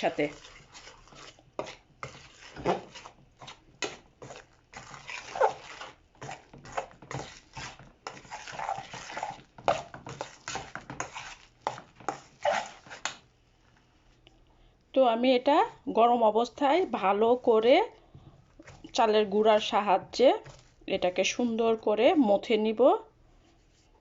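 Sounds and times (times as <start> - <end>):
spoon scraping a pot: 0.0 - 13.2.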